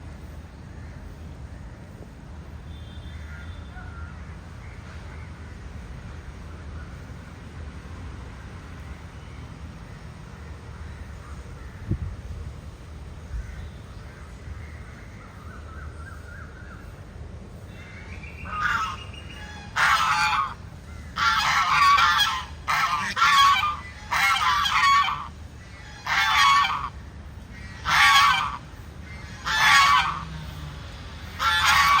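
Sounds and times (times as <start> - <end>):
large bird calling loudly: 17.8 - 30.3.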